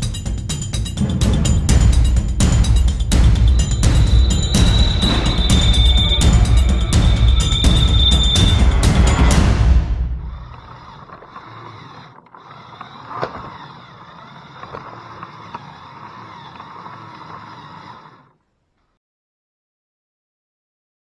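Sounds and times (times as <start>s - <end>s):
background music: 0.0s - 10.4s
toy truck motor whine: 3.5s - 18.5s
plastic gear clicks: 10.3s - 18.4s.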